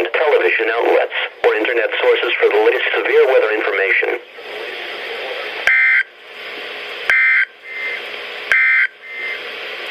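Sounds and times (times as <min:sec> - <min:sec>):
radio static: 0:00.0 - 0:09.9
digital data squawks: 0:07.1 - 0:09.4.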